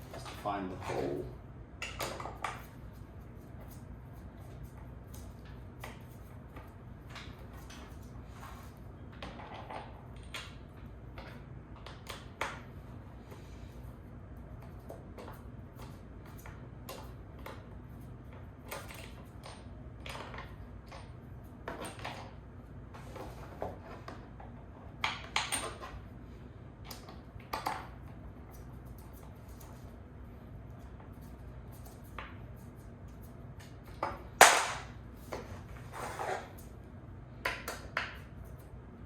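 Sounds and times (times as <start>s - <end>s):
steady low hum: 0.0s - 39.0s.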